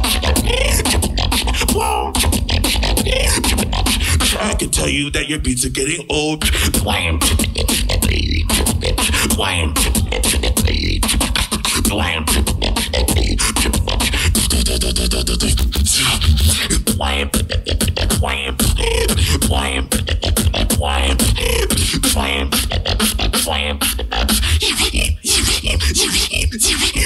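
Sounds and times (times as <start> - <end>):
beatboxing through a microphone: 0.0 - 27.0
continuous deep bass: 0.0 - 27.0
pitched vocal tones: 0.0 - 27.0.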